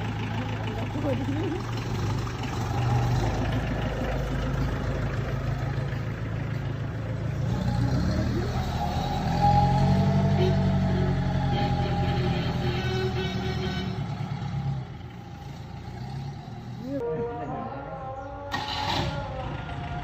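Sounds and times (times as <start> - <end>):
car engine running: 0.0 - 8.6.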